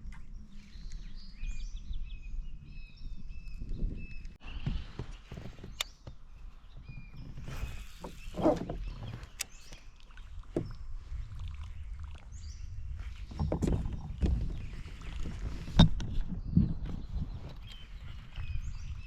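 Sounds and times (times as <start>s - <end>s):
wind and water rumble: 0.0s - 19.0s.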